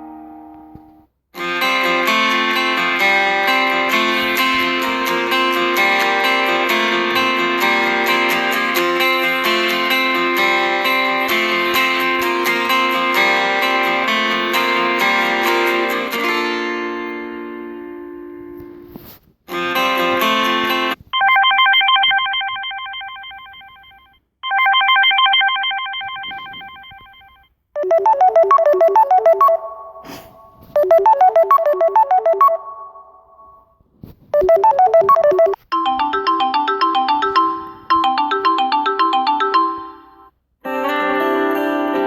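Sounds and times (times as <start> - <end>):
electronic ringtone melodies: 12.9 - 16.3, 21.2 - 33.7, 34.4 - 40.3.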